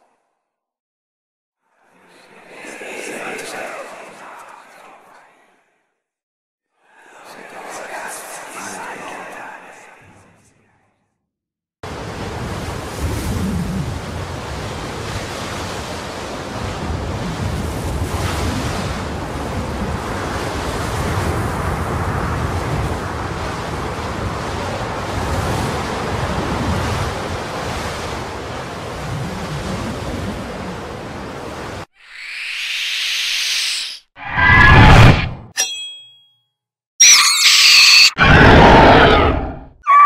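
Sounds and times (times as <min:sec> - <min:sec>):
stormy wind and surf roar: 0:11.9 - 0:31.9.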